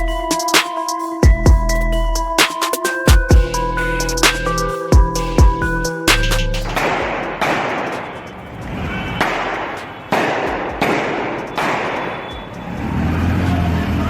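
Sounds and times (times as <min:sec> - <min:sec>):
echoing gunshots: 0:09.6 - 0:12.1.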